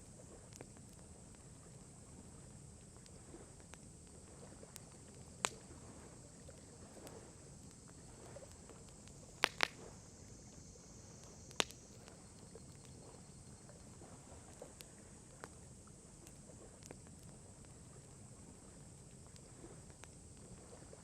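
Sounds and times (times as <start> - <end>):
campfire crackling: 0.1 - 21.0
sharp pops from fire: 3.0 - 6.2, 6.8 - 13.1.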